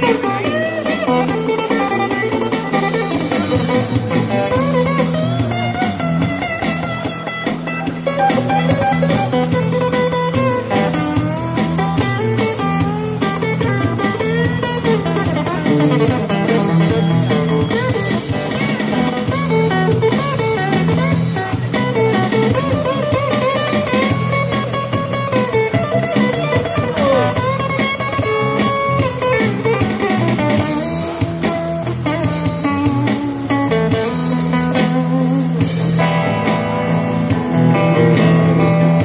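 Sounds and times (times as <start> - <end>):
blues guitar lead: 0.0 - 39.0
drums: 0.0 - 39.0.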